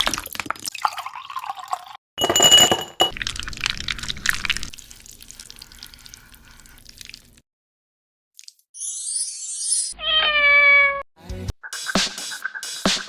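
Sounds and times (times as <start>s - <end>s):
dishes and utensils clinking: 2.2s - 3.2s.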